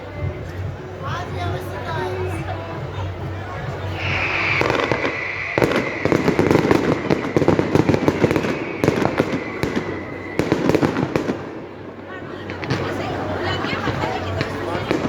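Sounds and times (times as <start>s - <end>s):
fireworks crackling: 0.4s - 15.0s
firework whistle: 3.9s - 12.8s.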